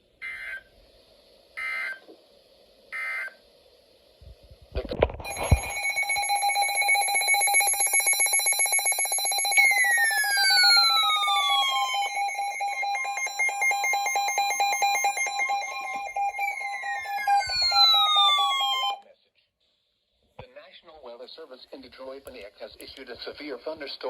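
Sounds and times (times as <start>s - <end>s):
pulsing electronic alarm tone: 5.2s - 19.0s
tone gliding downward: 9.4s - 19.0s.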